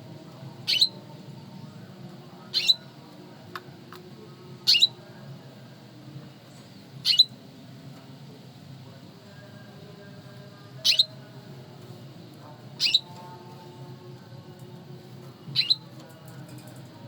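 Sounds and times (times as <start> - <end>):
canary chirping: 0.6 - 1.1, 2.5 - 2.9, 4.6 - 5.0, 7.0 - 7.4, 10.8 - 11.2, 12.7 - 13.4, 15.5 - 15.9.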